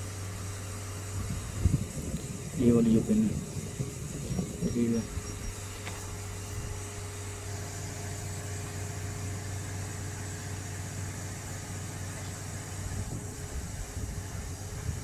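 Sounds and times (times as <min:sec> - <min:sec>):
small fan humming: 0:00.0 - 0:15.0.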